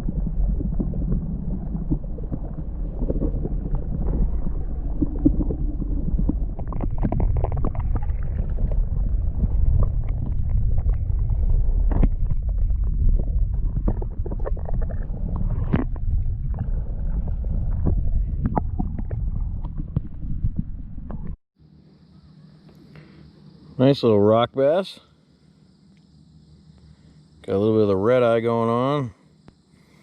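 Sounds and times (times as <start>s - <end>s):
wind buffeting microphone: 0.0s - 21.4s.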